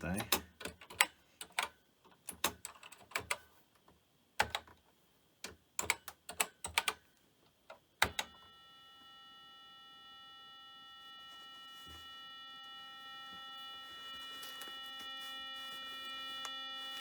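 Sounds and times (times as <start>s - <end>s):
buzzy computer speaker tone: 8.4s - 17.0s.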